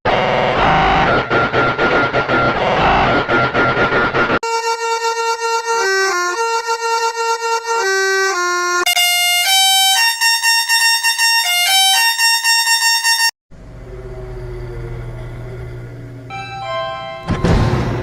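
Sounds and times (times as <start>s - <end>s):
musical vehicle horn: 4.4s - 13.3s
low rumble: 13.5s - 16.8s.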